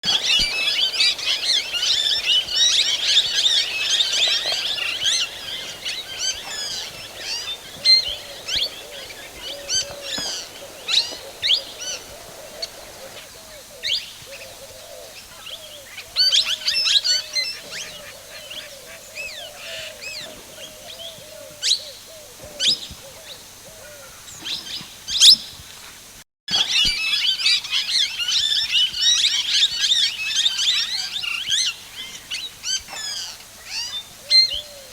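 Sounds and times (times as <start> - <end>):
low repeated bird calls: 0.0 - 25.5, 26.8 - 34.9
birds chirping and calling: 0.1 - 25.4.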